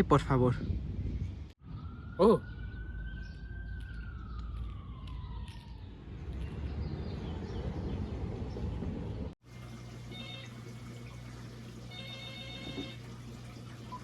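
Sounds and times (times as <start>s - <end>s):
siren-like descending tone: 1.6s - 6.4s
low rumble: 3.8s - 9.4s.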